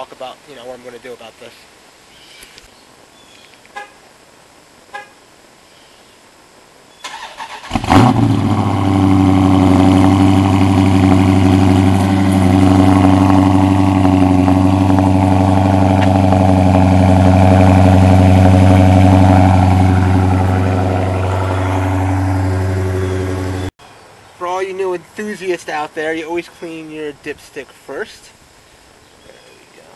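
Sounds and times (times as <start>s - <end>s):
car engine revving and idling: 7.6s - 23.8s.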